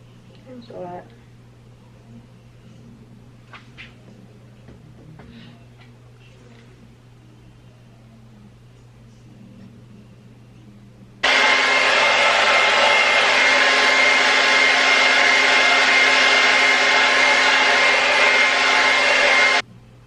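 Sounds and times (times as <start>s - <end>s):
hair dryer blowing: 11.2s - 19.6s.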